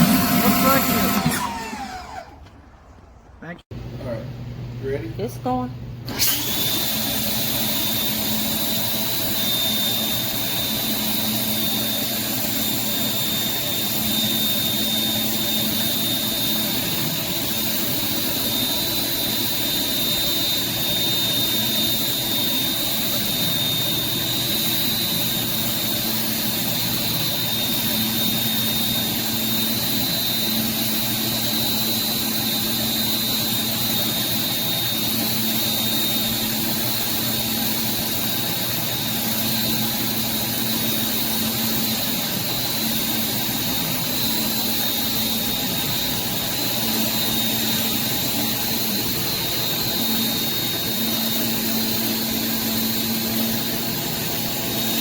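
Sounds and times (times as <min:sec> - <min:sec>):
pressure washer spraying concrete: 0:00.0 - 0:01.4
thin high whine: 0:00.0 - 0:02.3, 0:08.3 - 0:55.0.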